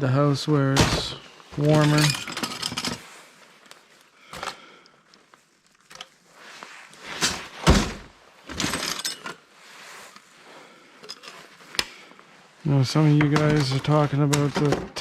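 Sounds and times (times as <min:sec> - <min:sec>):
parts clattering: 0:00.7 - 0:03.2, 0:06.9 - 0:09.5, 0:11.0 - 0:12.0, 0:13.0 - 0:15.0.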